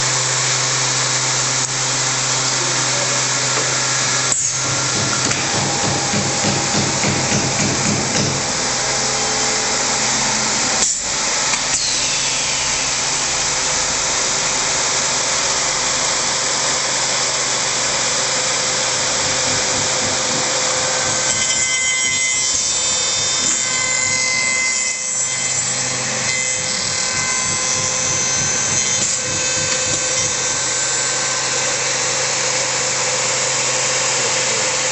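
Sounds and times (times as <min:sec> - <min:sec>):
machine cutters machining wood: 0:00.0 - 0:34.9
steady machine hum: 0:00.0 - 0:34.9
sharp knocks: 0:04.4 - 0:09.0, 0:19.0 - 0:24.2.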